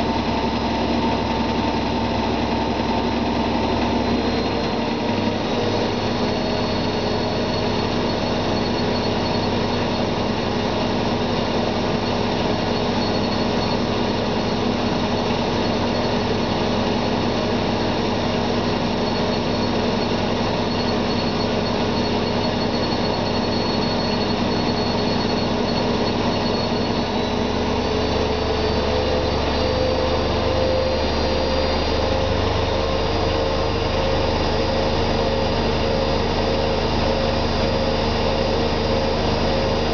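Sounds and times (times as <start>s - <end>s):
spinning drum hum: 0.0s - 27.2s
washing machine motor whine: 0.0s - 39.9s.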